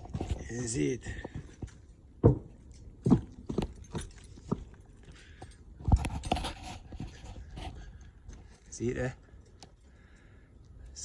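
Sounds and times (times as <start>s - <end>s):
light scraping and rattling: 0.0s - 10.2s
thumps and knocks: 1.0s - 4.7s.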